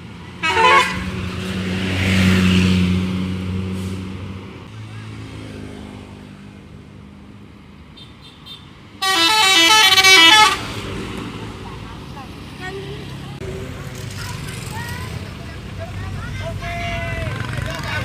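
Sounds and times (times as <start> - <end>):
musical air horn tune: 0.4 - 1.1, 9.0 - 10.7
bus engine droning: 9.0 - 18.0.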